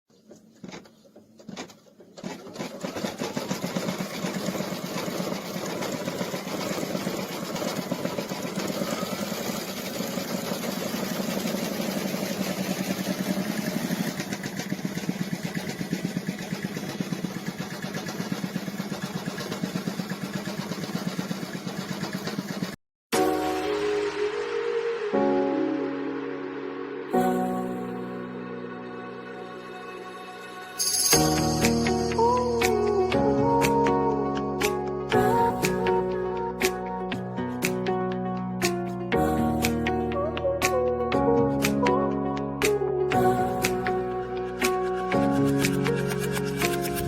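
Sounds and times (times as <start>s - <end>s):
embroidery machine stitching: 0.6s - 22.8s, 44.5s - 47.0s
machine clicks: 44.6s - 47.0s.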